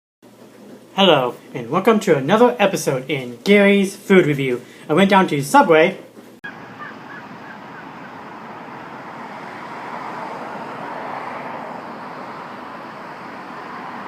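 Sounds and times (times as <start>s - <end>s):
road traffic rushing: 6.4s - 14.0s.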